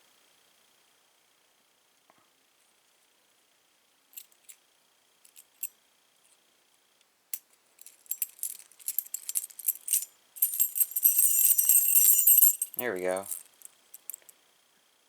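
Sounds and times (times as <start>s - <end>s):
keys jingling on key ring: 7.8s - 14.3s.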